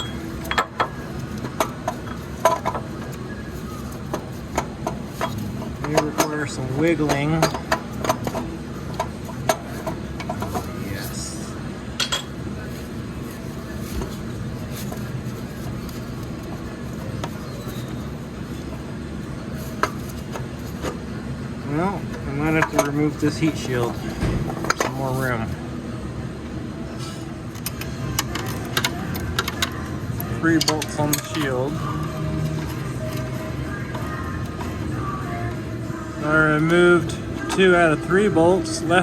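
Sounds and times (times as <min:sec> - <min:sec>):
low mechanical hum: 0:00.0 - 0:39.0
tools clicking on metal parts: 0:04.1 - 0:10.7, 0:27.5 - 0:33.3.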